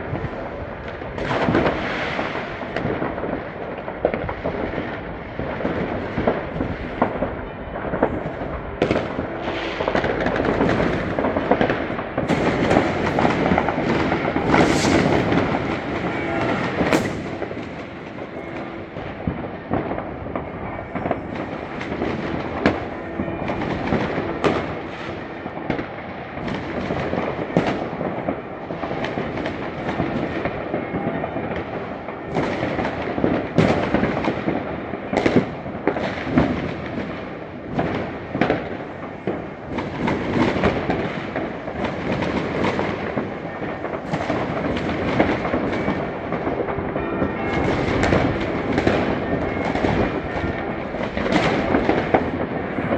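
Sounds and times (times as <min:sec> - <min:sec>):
fireworks bangs and crackling: 0:00.0 - 0:52.9.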